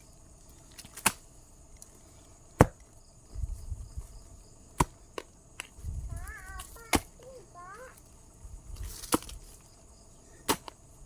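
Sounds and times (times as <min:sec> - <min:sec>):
insects chirping: 0:00.0 - 0:11.0
digging tool chopping soil: 0:00.8 - 0:01.3, 0:02.6 - 0:02.9, 0:04.7 - 0:05.0, 0:06.6 - 0:07.2, 0:08.8 - 0:09.5, 0:10.4 - 0:10.8.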